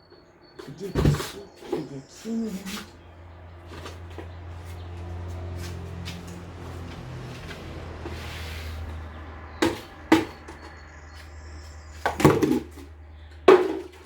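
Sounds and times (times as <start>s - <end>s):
objects clattering: 0.2s - 14.0s
objects knocking on surface: 9.6s - 10.9s, 12.0s - 12.9s.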